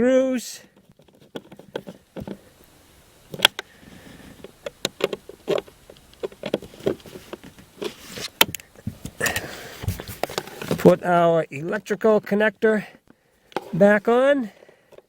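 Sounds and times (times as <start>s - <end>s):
screws and plastic parts clicking: 0.7s - 11.0s.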